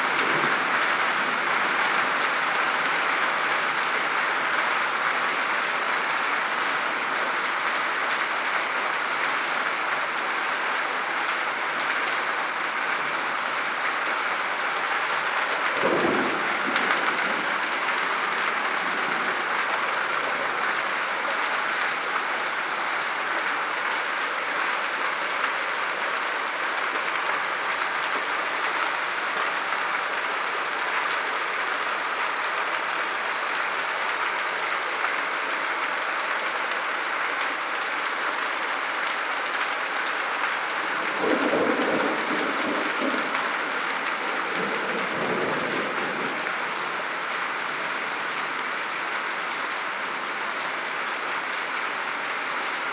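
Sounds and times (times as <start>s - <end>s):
heavy rain pouring: 0.0s - 52.9s
low thunder rumble: 15.7s - 20.6s.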